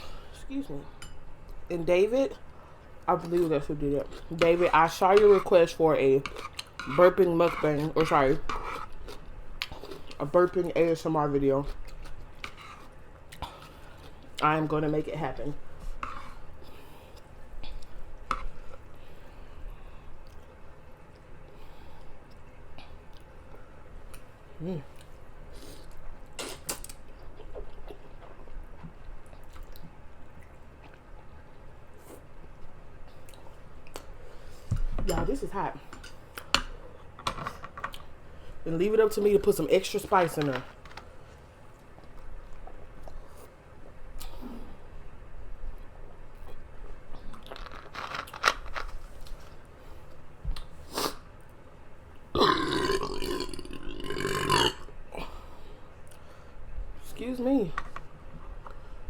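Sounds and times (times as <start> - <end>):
person chewing noodles: 8.8 - 10.3, 52.3 - 55.4
long loud burp: 52.4 - 54.9.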